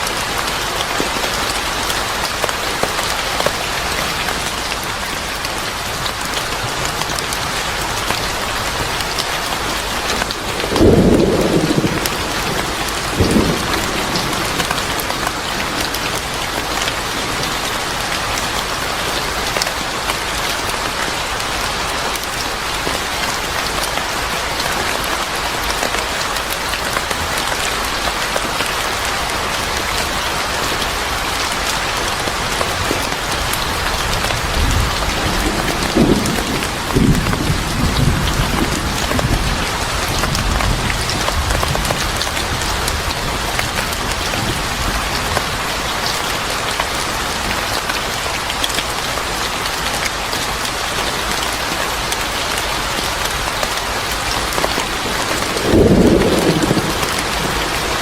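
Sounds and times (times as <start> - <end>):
rain hissing: 0.0 - 58.0
thunder clap: 10.2 - 17.9, 32.7 - 43.3, 55.0 - 58.0
thunder rumbling: 10.2 - 18.3, 32.3 - 45.4, 55.0 - 58.0.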